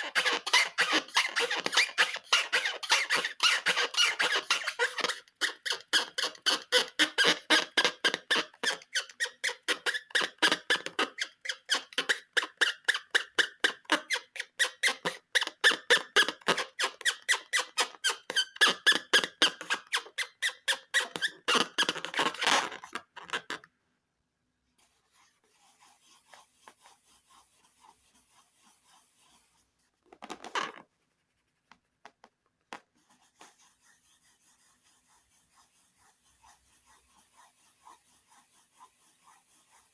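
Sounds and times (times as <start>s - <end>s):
rubber balloons squeaking: 0.0s - 23.7s
short rubbing sound: 24.8s - 29.9s, 33.0s - 39.9s.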